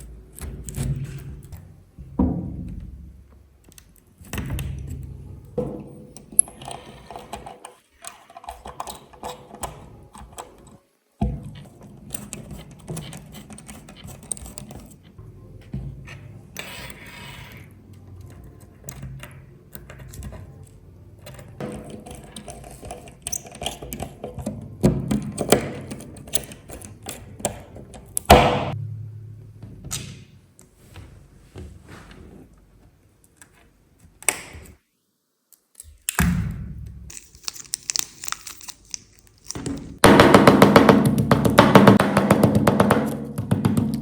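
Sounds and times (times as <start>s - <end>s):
sharp knock: 40.0s - 44.0s.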